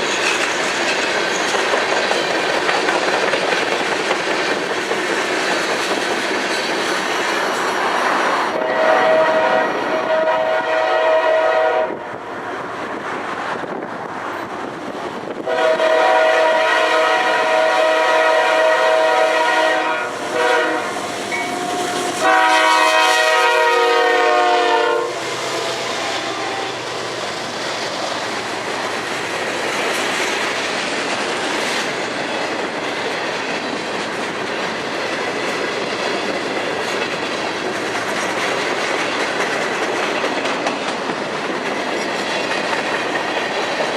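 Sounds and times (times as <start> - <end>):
train wheels on rails: 0.0 - 43.9
locomotive air horn: 8.6 - 12.1, 15.5 - 27.0.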